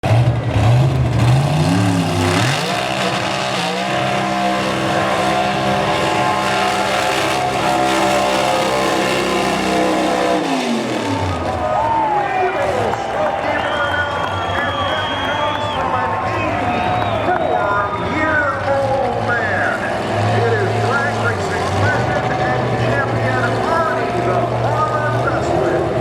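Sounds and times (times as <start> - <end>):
car engine revving: 0.0 - 26.0.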